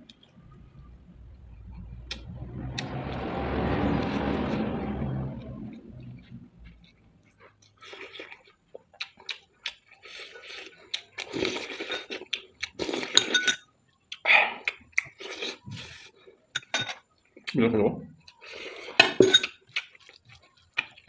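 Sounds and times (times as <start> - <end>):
chewing food: 5.2 - 13.2, 13.9 - 17.6, 18.2 - 21.0.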